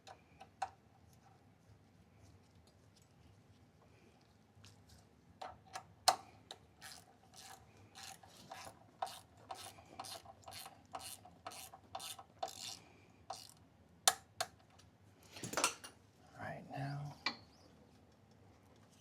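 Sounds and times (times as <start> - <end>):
ratchet wrench clicking: 6.8 - 14.2.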